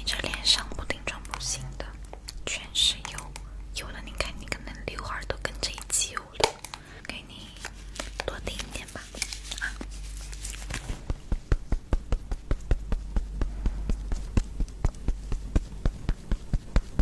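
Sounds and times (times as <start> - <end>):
rapid light tapping: 10.9 - 17.0.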